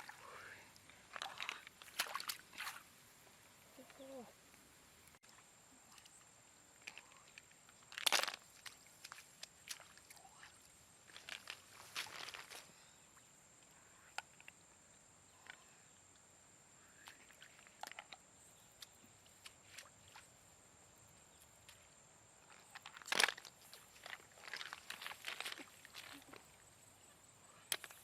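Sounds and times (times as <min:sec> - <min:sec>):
soft rustles and crunches: 0:06.8 - 0:12.8, 0:21.4 - 0:26.6.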